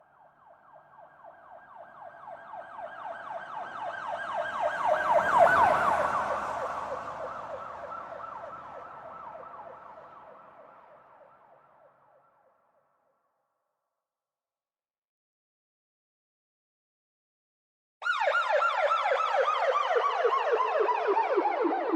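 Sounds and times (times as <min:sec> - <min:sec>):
police siren yelping: 0:00.5 - 0:10.0, 0:18.0 - 0:21.9.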